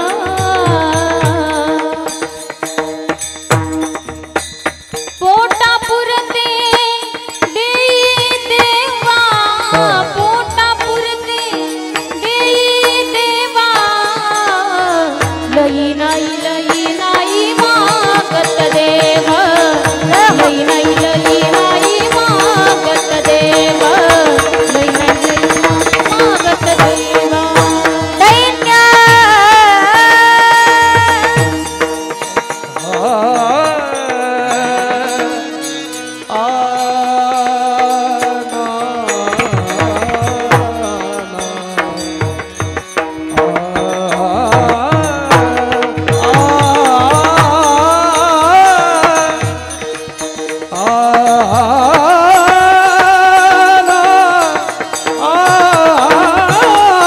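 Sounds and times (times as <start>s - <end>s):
person singing ornamented phrases: 8.0s - 11.6s, 12.2s - 31.8s, 32.8s - 42.2s.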